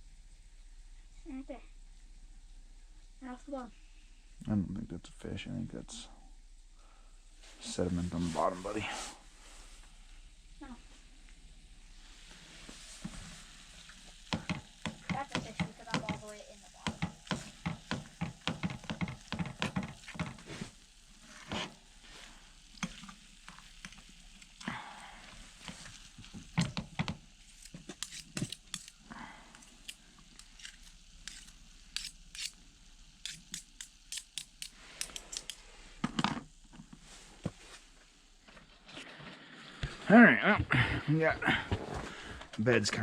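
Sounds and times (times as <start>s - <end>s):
food sizzling in a pan: 6.3s - 38.4s
utensil scraping a pan: 12.6s - 24.2s, 25.6s - 29.0s, 29.6s - 32.6s.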